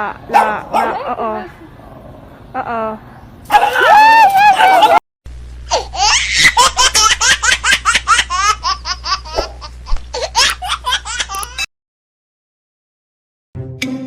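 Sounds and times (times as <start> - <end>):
steady low hum: 0.0 - 3.9, 4.8 - 11.6
person laughing hard: 3.6 - 5.0.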